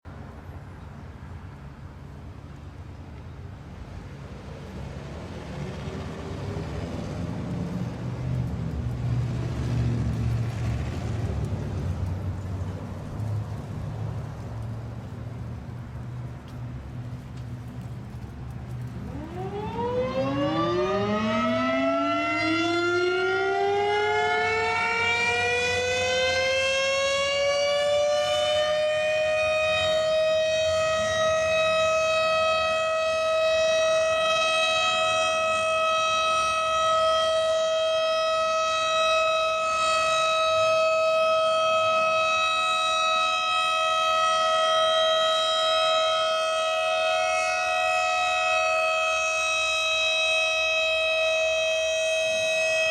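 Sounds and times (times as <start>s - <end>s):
dual-tone siren winding up: 19.1s - 52.9s.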